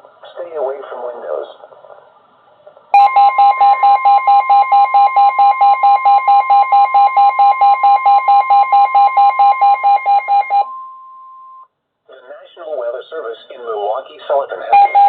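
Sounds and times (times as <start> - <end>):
rapid pulsing beep: 3.0 - 11.6, 14.7 - 15.0
steady alarm tone: 3.0 - 11.6, 14.7 - 15.0.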